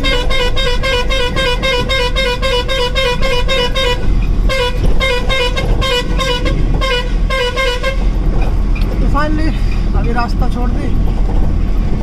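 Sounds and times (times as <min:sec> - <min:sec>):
truck horn honking in pulses: 0:00.0 - 0:08.2
engine rumbling: 0:00.0 - 0:12.0.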